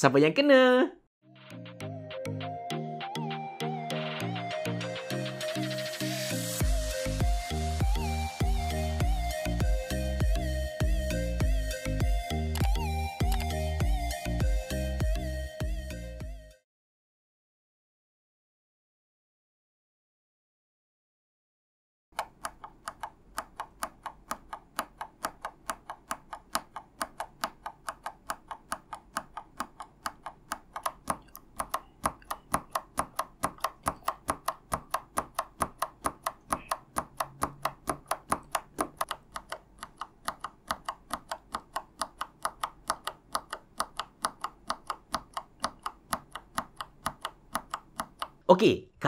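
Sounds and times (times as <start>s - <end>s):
keyboard switches clicking: 22.2s - 48.4s.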